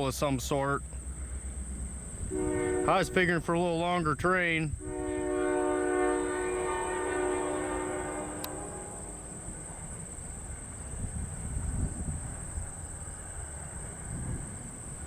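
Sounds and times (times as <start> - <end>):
train rumbling by: 0.0 - 15.0
locomotive air horn: 2.3 - 3.8, 4.7 - 9.8.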